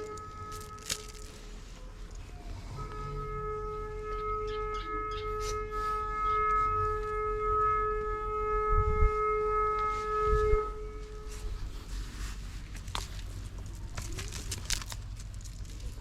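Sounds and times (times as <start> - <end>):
steady horn-like tone: 0.0 - 12.7.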